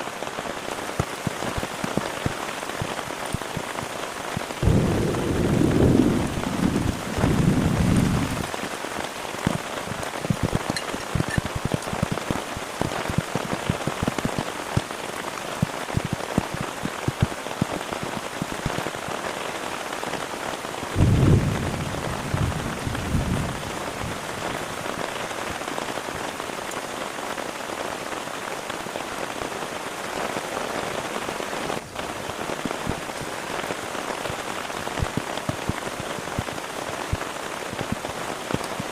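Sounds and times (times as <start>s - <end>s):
heavy rain: 0.0s - 38.9s
raindrops striking close by: 0.0s - 38.9s
low thunder rumbles: 4.6s - 8.8s, 20.9s - 24.3s.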